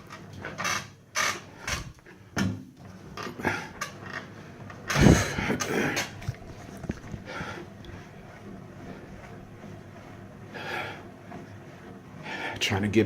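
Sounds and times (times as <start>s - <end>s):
exercise bike creaking: 0.0s - 13.0s
hard breathing: 3.3s - 12.7s.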